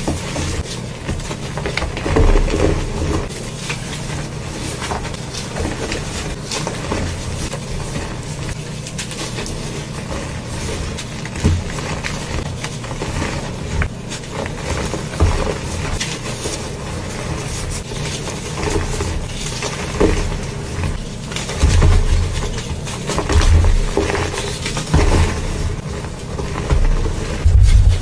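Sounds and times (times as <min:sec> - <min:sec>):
concrete mixer rumbling: 0:00.0 - 0:28.0
knocks and clatters: 0:26.5 - 0:28.0.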